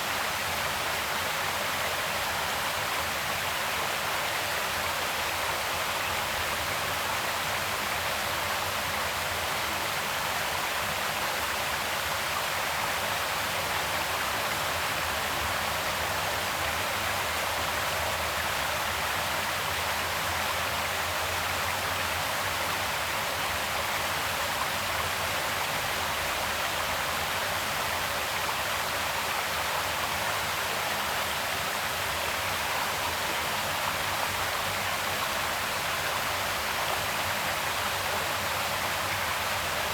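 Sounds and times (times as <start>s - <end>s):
creek water flowing: 20.9s - 39.9s.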